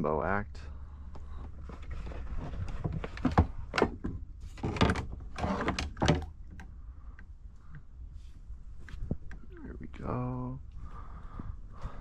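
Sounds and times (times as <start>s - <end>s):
kayak knocking and scraping: 1.2s - 6.7s.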